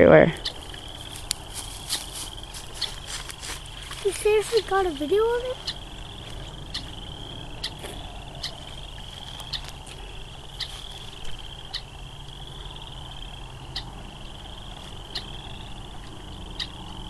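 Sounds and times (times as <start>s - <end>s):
frogs trilling: 0.0s - 17.0s
short sharp frog calls: 5.6s - 17.0s.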